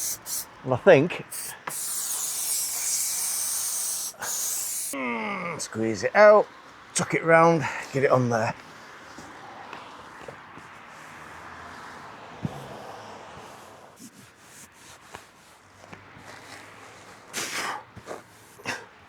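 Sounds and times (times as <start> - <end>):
brief hiss: 0.0 - 0.5, 1.3 - 4.9
rustling and scraping of carpet: 9.1 - 18.7.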